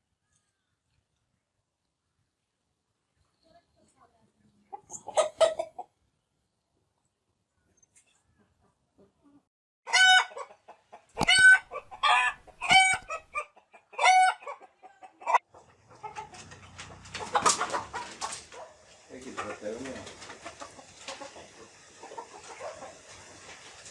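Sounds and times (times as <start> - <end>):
chicken squawking: 4.7 - 5.8, 9.9 - 18.8, 20.5 - 23.1
rustling: 16.4 - 23.9.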